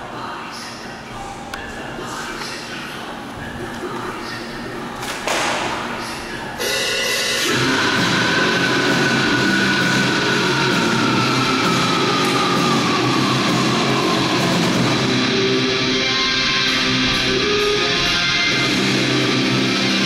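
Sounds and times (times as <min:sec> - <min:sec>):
heavy metal music: 0:04.8 - 0:20.0.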